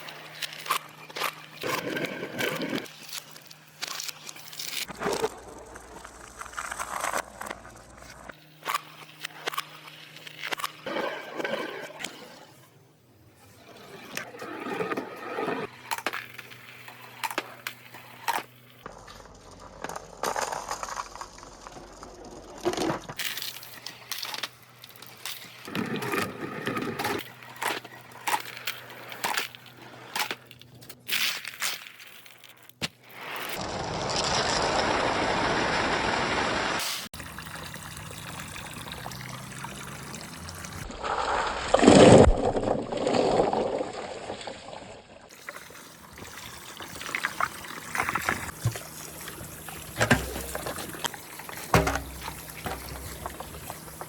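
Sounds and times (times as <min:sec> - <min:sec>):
water rushing down chutes: 0:45.9 - 0:54.0.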